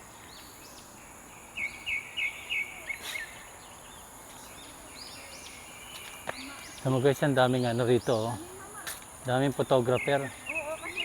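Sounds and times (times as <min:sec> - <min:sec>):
birds chirping and calling: 0:00.4 - 0:11.0.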